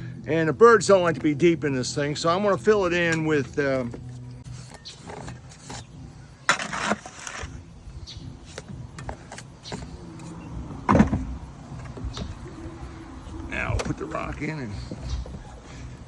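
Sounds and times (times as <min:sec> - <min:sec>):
mortar scraping and knocking: 0:03.8 - 0:07.6.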